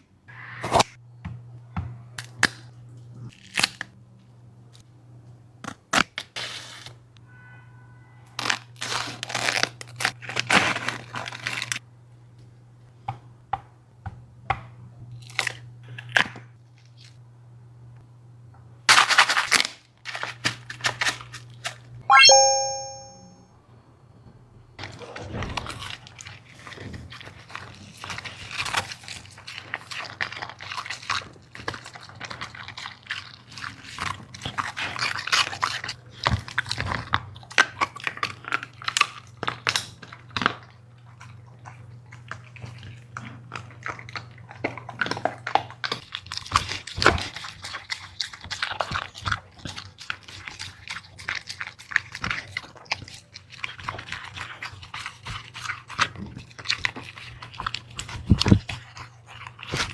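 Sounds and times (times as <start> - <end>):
dog crunching and chewing food: 18.9 - 21.8, 25.7 - 59.9.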